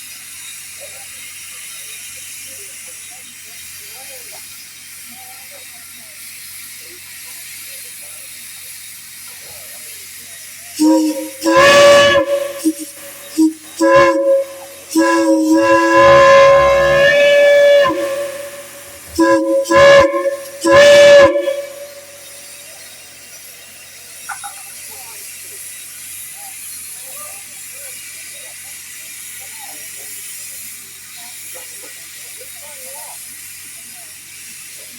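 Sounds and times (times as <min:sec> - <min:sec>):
steam hissing: 0:00.0 - 0:34.9
steam whistle toots and blasts: 0:10.8 - 0:23.0.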